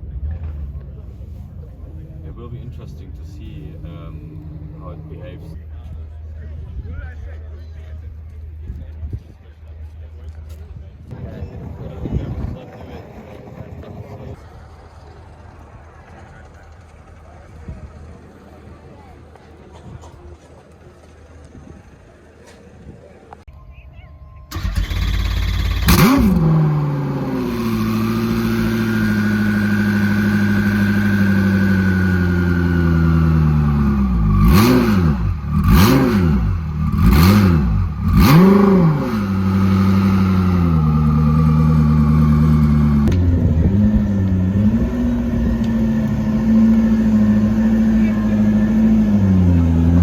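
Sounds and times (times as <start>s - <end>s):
car engine revving and idling: 0.0s - 5.6s, 24.5s - 50.0s.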